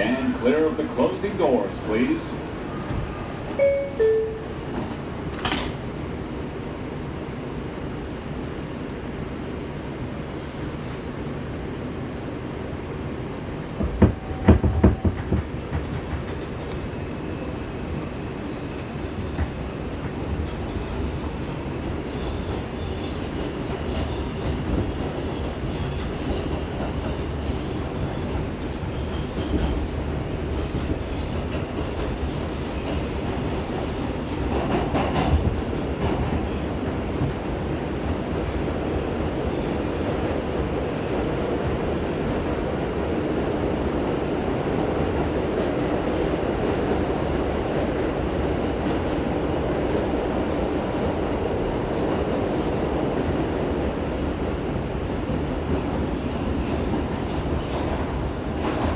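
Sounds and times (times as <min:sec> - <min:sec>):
rail clicks: 0:00.0 - 0:06.1, 0:13.6 - 0:17.2, 0:18.8 - 0:39.0
subway wheels rumbling on rail: 0:00.0 - 0:58.9.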